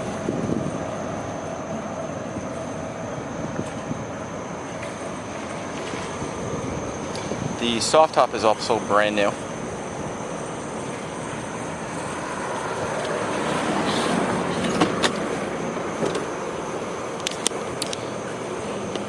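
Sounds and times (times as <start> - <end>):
vehicle passing: 4.7 - 19.0.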